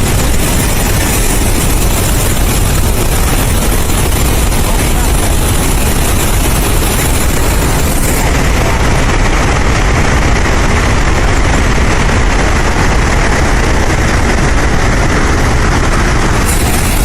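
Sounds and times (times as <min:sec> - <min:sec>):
water rushing from dam: 0:00.0 - 0:09.6, 0:16.0 - 0:17.0
deep rumble: 0:00.0 - 0:17.0.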